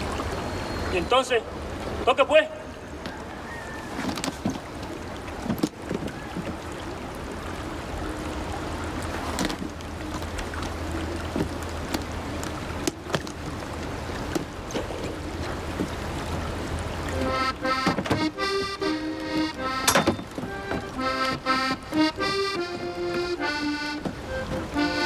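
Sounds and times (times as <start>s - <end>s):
water washing: 0.0s - 25.0s
wooden boat knocks and clicks: 3.9s - 6.8s, 9.3s - 16.4s, 17.3s - 25.0s.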